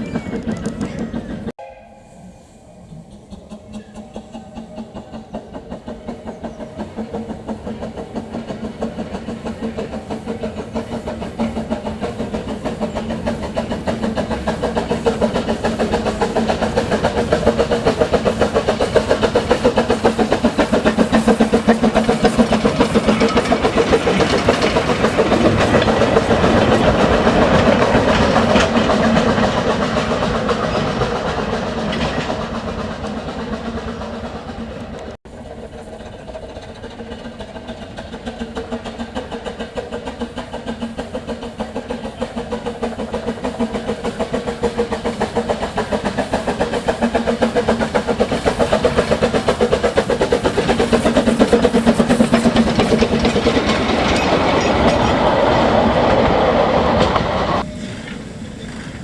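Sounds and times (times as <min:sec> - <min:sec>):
narrow-gauge locomotive passing: 0:00.0 - 0:59.0.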